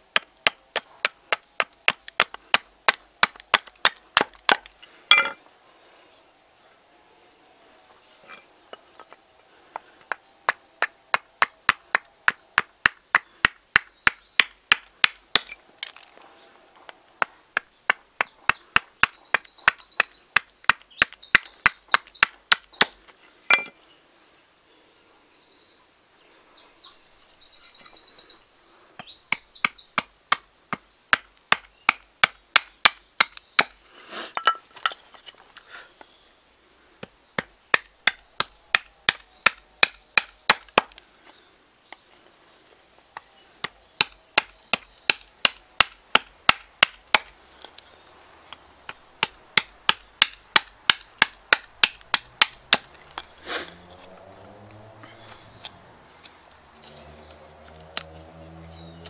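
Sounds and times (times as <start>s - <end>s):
axe chopping wood: 0.2s - 5.4s, 9.7s - 16.1s, 17.2s - 23.7s, 29.3s - 33.8s, 37.0s - 41.0s, 43.6s - 47.4s, 48.5s - 55.9s.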